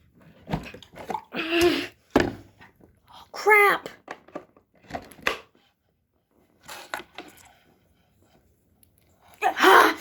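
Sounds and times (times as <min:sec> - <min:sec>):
objects knocking and clattering: 0:00.0 - 0:03.0, 0:03.8 - 0:05.6.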